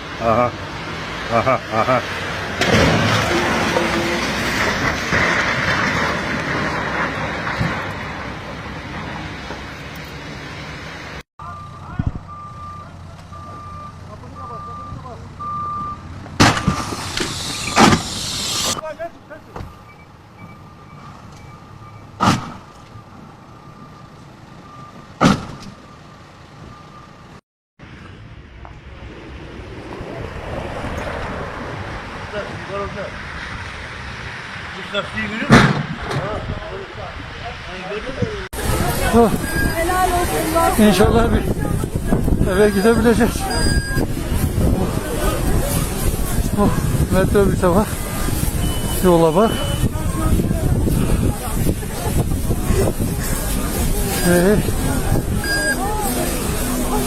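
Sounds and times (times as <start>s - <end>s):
vehicle passing with rushing sound: 0.0s - 11.2s, 27.8s - 57.0s
traffic rumble: 0.0s - 57.0s
vehicle warning beeper: 11.4s - 27.4s, 38.9s - 44.8s, 48.2s - 51.2s, 53.6s - 57.0s
loud thumps: 16.3s - 18.8s, 35.5s - 36.4s.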